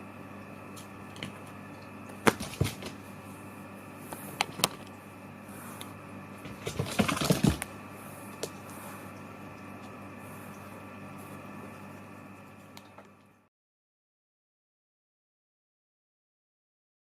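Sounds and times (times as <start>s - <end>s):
steady background hum: 0.0s - 13.5s.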